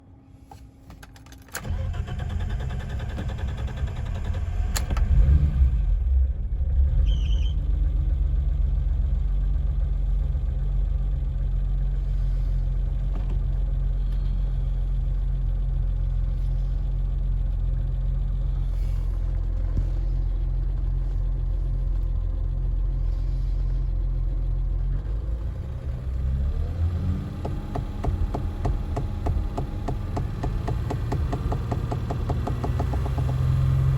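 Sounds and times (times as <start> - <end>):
car engine starting and revving: 1.6 - 12.6, 24.5 - 33.9
engine knock: 27.2 - 33.9.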